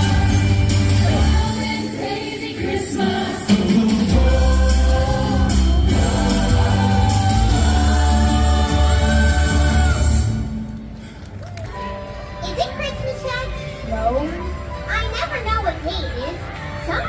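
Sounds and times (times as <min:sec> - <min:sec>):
heavy bass line: 0:00.0 - 0:01.6, 0:03.8 - 0:10.6
choir singing christmas music: 0:00.0 - 0:10.8.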